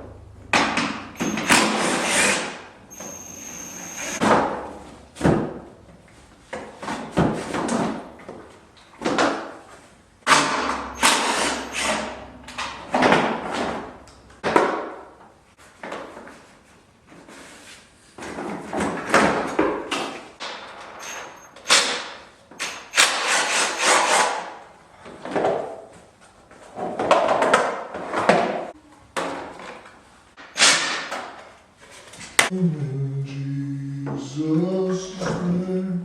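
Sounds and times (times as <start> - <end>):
whirring tone: 1.2 - 1.7, 2.9 - 4.2
impact driver bursts: 1.2 - 4.2, 10.3 - 12.2
parts knocking and clattering: 10.2 - 15.0.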